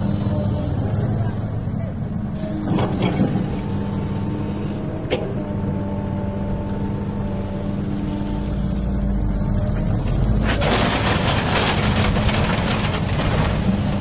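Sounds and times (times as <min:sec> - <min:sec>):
diesel engine running: 0:00.0 - 0:14.0.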